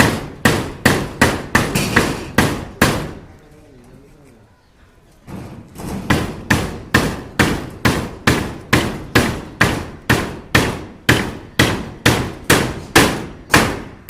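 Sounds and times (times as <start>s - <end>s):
hammer blows: 5.3s - 14.0s.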